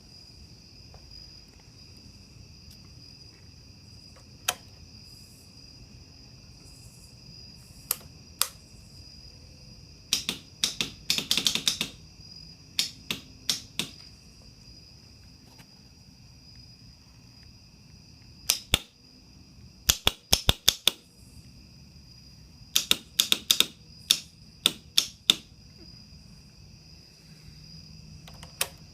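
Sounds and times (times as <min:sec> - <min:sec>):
motorcycle starter relay clicking: 0:04.4 - 0:04.6, 0:10.1 - 0:12.0, 0:28.2 - 0:28.8.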